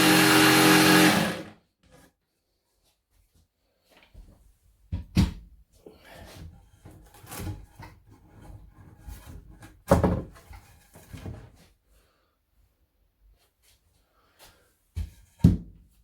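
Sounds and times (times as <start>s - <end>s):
wood clattering and scraping: 6.2s - 11.7s.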